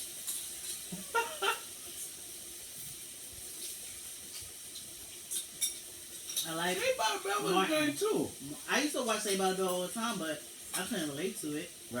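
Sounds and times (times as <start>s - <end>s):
broth simmering with hiss: 0.0s - 12.0s
dishes clinking: 0.2s - 1.6s, 5.3s - 6.9s.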